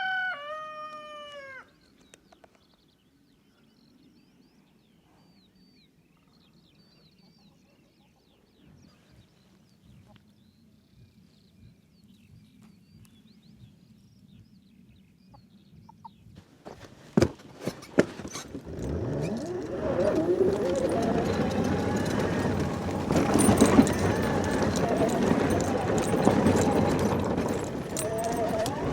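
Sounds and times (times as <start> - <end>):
loud rumbling with rising whines: 18.5 - 28.9.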